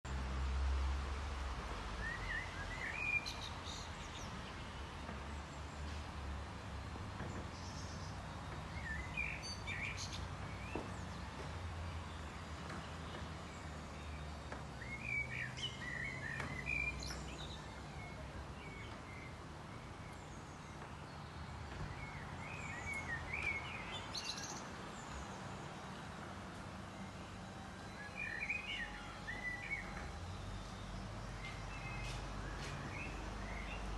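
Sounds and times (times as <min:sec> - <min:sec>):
small birds chirping: 0:07.2 - 0:25.7.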